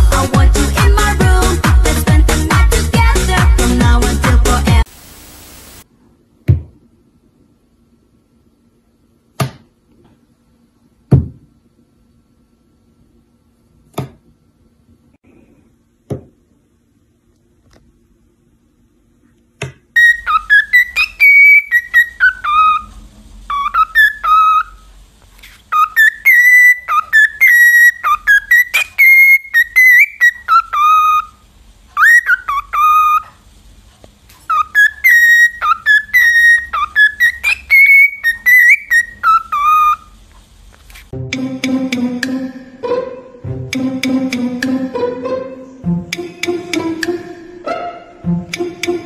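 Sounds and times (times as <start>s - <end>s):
parrot whistling a tune: 20.0s - 22.9s, 23.5s - 24.9s, 25.7s - 31.4s, 32.0s - 33.4s, 34.5s - 40.2s.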